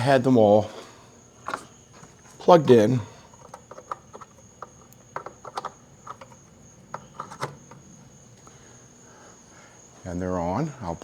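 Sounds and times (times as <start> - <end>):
light clicks and knocks: 3.3 - 8.6.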